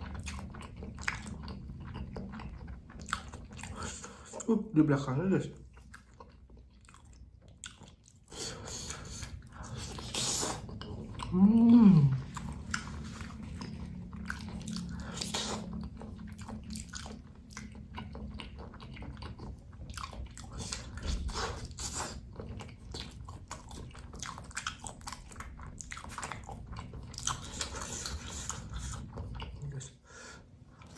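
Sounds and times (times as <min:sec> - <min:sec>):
close-up chewing and biting: 0:00.0 - 0:04.4, 0:05.5 - 0:29.8.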